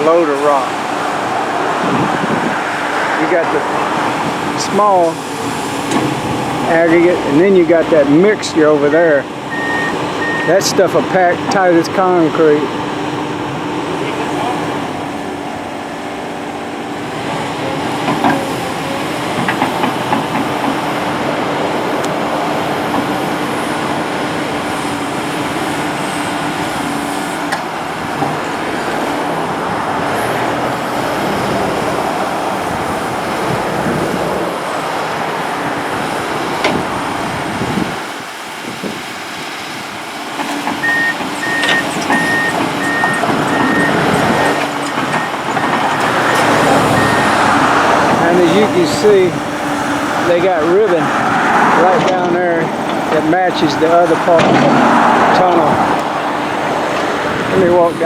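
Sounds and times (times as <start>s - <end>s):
heavy diesel machinery running: 0.0s - 58.0s
backup alarm beeping: 9.5s - 10.7s, 40.8s - 48.0s.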